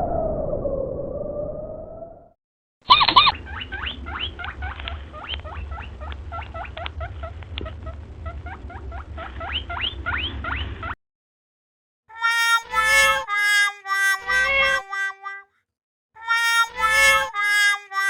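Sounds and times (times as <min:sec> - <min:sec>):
low rumble: 0:00.0 - 0:02.3, 0:03.1 - 0:11.0
rat squeaking: 0:02.9 - 0:11.0.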